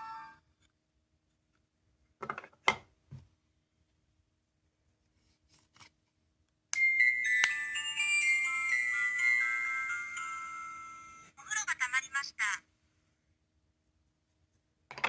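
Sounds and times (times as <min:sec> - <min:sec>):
toy chime melody: 0:06.8 - 0:12.0.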